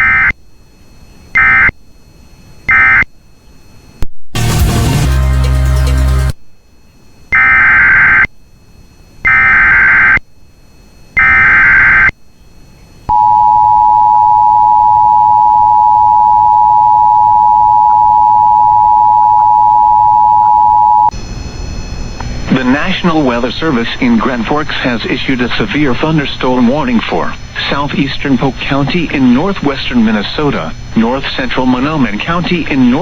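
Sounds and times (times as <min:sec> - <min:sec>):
steady dual-tone attention signal: 0:00.0 - 0:00.4, 0:01.3 - 0:01.9, 0:02.6 - 0:03.2, 0:07.3 - 0:08.4, 0:09.2 - 0:10.3, 0:11.1 - 0:12.2, 0:13.1 - 0:33.0
loud sound cutting off: 0:04.4 - 0:06.4.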